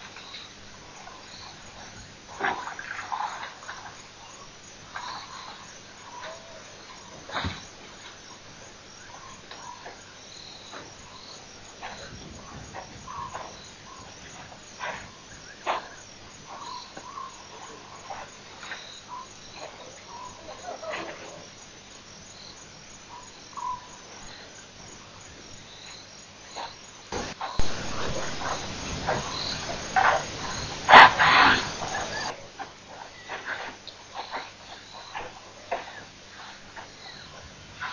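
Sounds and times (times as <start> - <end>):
frogs and insects chirping: 0.0 - 37.9
noisy sounds near microphone: 0.0 - 37.9
sharp loud burst: 27.2 - 31.7.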